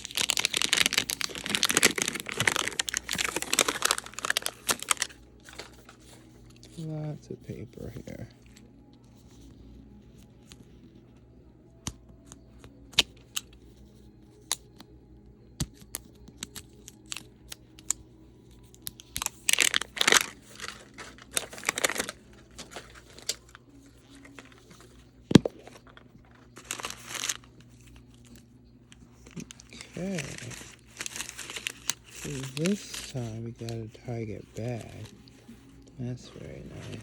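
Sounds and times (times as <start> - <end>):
paper wrapping crinkling and tearing: 0.0 - 8.6, 18.6 - 37.0.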